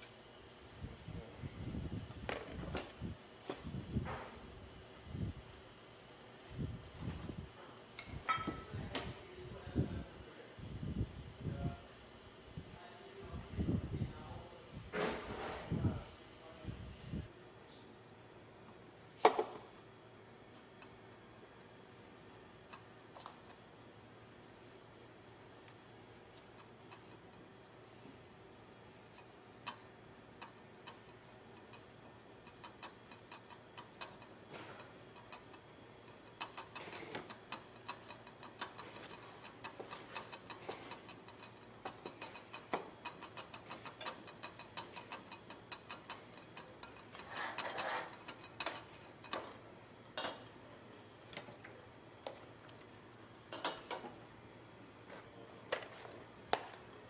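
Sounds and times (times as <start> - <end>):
faint steady hum: 0.0 - 57.0
utensils clicking and knocking: 30.4 - 50.6
scraping or rustling: 47.1 - 48.3.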